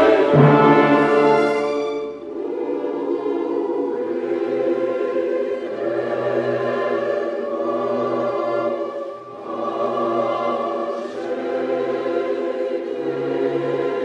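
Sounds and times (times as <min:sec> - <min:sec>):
orchestral accompaniment: 0:00.0 - 0:03.8
choral singing: 0:00.0 - 0:14.0.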